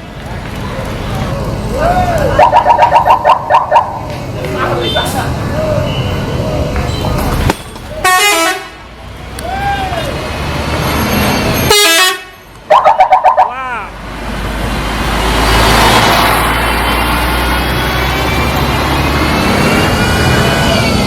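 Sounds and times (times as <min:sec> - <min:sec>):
bus engine rumble: 0:00.0 - 0:21.0
voices: 0:00.2 - 0:08.3, 0:12.7 - 0:14.0
bus horn playing melodic tune: 0:08.0 - 0:08.9, 0:11.7 - 0:13.5.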